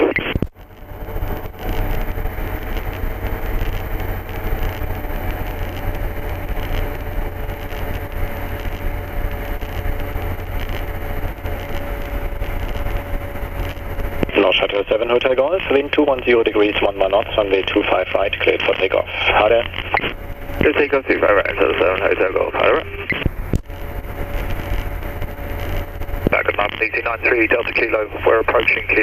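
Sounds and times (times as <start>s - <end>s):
faint steady tones: 0.0s - 29.0s
ultralight engine and propeller drone: 0.0s - 29.0s.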